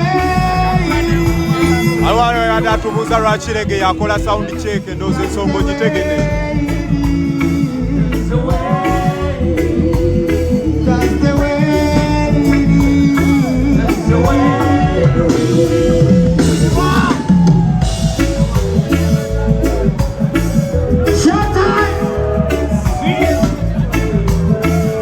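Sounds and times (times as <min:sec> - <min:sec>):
person singing: 0:00.0 - 0:18.6
bass: 0:00.0 - 0:25.0
drums: 0:00.0 - 0:25.0.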